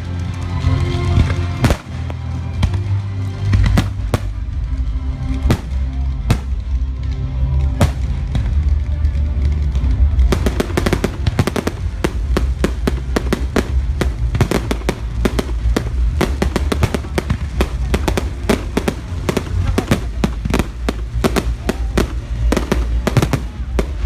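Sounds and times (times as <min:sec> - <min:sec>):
music: 0:00.0 - 0:24.0
rapid crackling firework bangs: 0:01.2 - 0:02.9, 0:03.5 - 0:04.6, 0:05.4 - 0:06.8, 0:07.8 - 0:08.6, 0:10.3 - 0:24.0
fireworks booming: 0:01.6 - 0:02.9, 0:03.5 - 0:04.6, 0:05.4 - 0:06.9, 0:07.8 - 0:08.6, 0:10.3 - 0:24.0.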